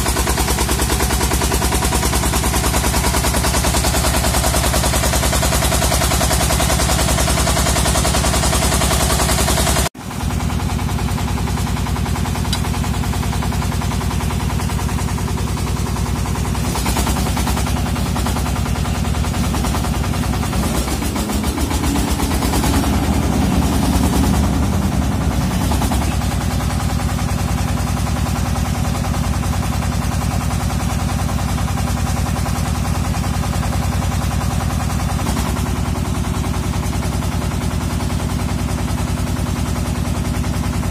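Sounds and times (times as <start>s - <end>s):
drilling rig engine pulsing: 12.0s - 28.8s.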